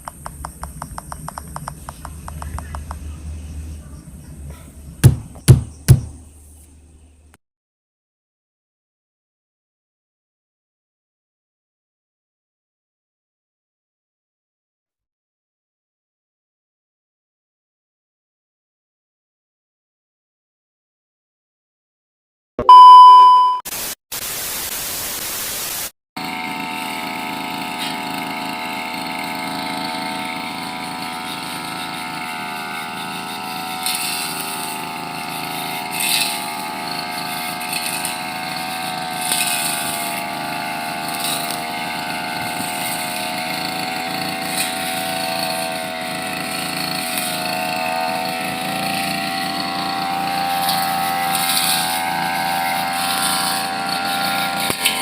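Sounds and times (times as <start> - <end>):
brush cutter engine running: 0.0 - 6.5, 26.2 - 55.0
short loud beep: 22.6 - 23.6
burst of hiss: 23.8 - 25.9
sharp cutting sounds: 26.2 - 55.0.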